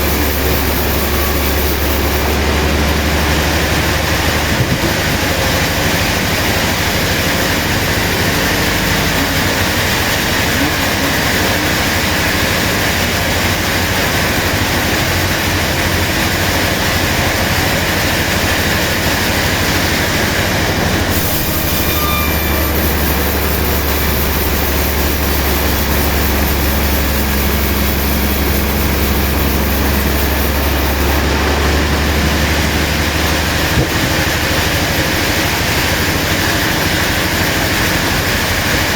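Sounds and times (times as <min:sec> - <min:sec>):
high hiss: 0:00.0 - 0:02.4, 0:21.1 - 0:31.2
deep hum: 0:00.0 - 0:16.3, 0:19.4 - 0:37.5
sawmill machinery running: 0:00.0 - 0:38.9.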